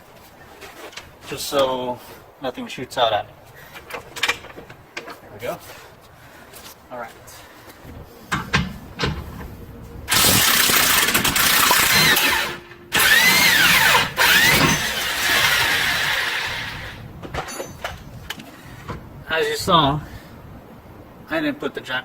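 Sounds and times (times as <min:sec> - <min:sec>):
power tool motor running: 0:10.1 - 0:17.0.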